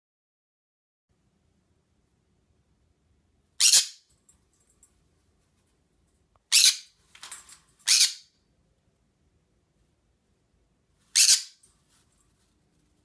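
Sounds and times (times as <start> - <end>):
parrot chirp: 3.6 - 4.1, 6.5 - 7.0, 7.8 - 8.4, 11.1 - 11.6
parrot squawking: 3.6 - 4.1, 6.5 - 7.0, 7.8 - 8.3, 11.1 - 11.6.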